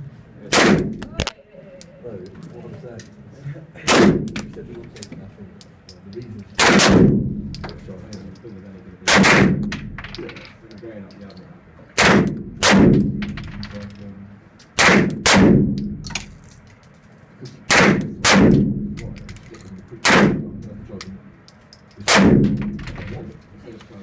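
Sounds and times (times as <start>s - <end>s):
echoing gunshots: 0.5s - 1.0s, 3.9s - 4.4s, 6.6s - 7.5s, 9.1s - 10.0s, 12.0s - 13.5s, 14.8s - 16.1s, 17.7s - 19.0s, 20.0s - 20.5s, 22.0s - 22.8s.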